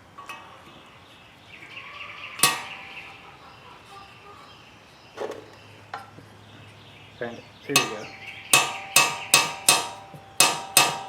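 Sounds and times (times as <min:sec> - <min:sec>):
sharp metallic clack: 0:00.0 - 0:00.8, 0:02.4 - 0:03.6, 0:07.7 - 0:11.0
squeaky metal scrape: 0:01.8 - 0:04.2.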